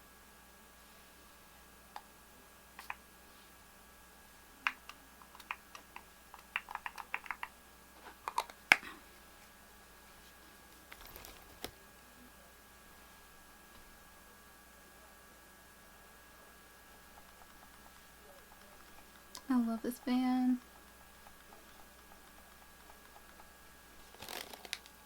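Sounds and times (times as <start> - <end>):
objects clicking and tapping: 4.7 - 8.9.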